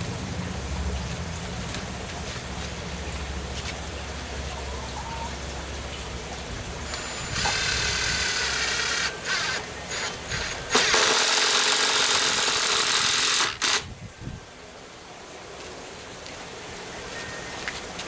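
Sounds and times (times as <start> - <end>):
power tool motor running: 6.9 - 13.9.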